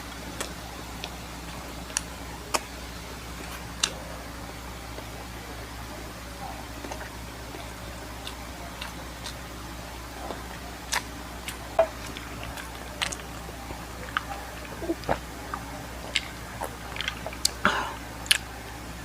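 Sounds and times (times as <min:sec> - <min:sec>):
steady low hum: 0:00.0 - 0:19.0
wet lip smacks and clicks: 0:00.3 - 0:01.2, 0:01.9 - 0:02.7, 0:10.3 - 0:17.6, 0:18.2 - 0:18.5
person chewing: 0:00.3 - 0:04.0, 0:06.7 - 0:18.6.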